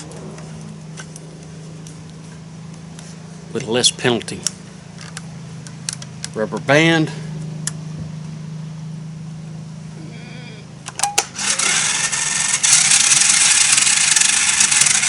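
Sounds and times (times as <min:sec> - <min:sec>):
motorised target rattling whir: 0:10.8 - 0:15.0.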